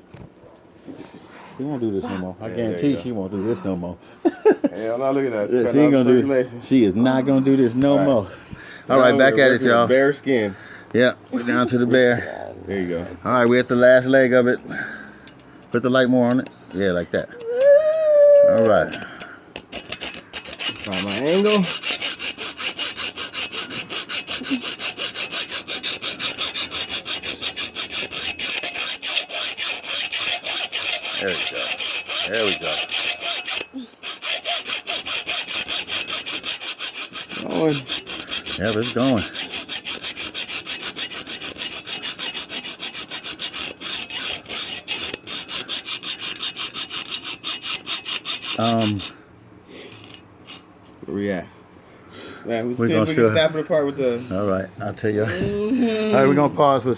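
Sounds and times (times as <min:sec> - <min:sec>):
hacksaw cutting metal: 0:18.5 - 0:49.2, 0:49.9 - 0:50.7.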